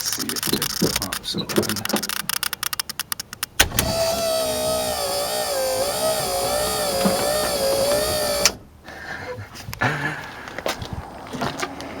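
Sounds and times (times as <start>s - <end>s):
electric motor whining: 3.6s - 8.6s.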